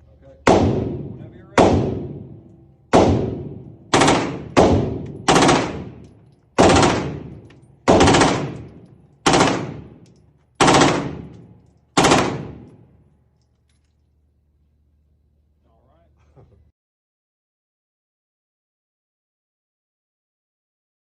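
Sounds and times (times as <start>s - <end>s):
automatic rifle bursts with echo: 2.9s - 13.0s.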